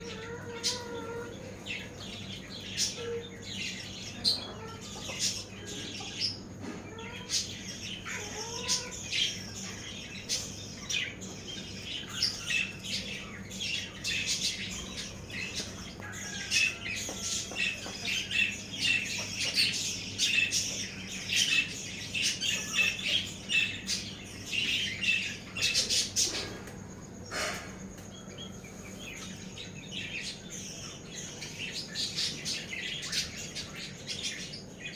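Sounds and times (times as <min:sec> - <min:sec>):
birds chirping: 0:00.0 - 0:34.9.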